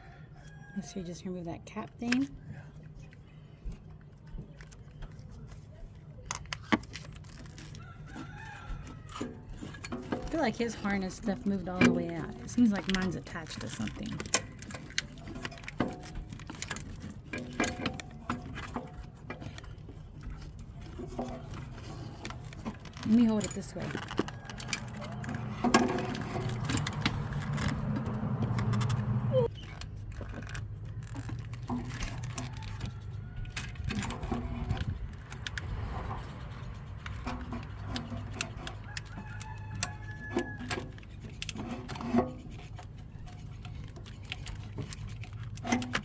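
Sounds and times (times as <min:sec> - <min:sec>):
metal tools clinking and rattling: 0:06.2 - 0:46.0.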